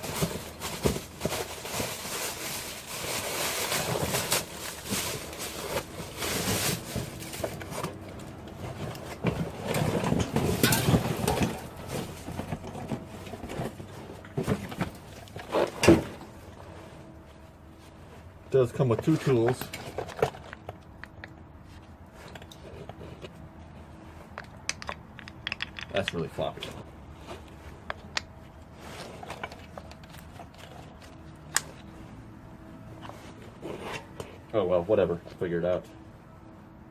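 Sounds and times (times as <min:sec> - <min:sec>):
metal parts and tools clicking: 0:24.4 - 0:26.3.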